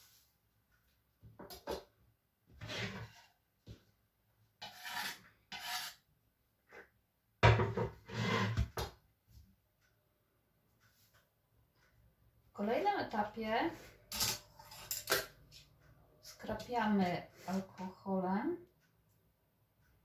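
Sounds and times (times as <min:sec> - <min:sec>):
knife scraping cutting board: 0:02.6 - 0:03.4, 0:04.6 - 0:06.0, 0:08.1 - 0:08.7.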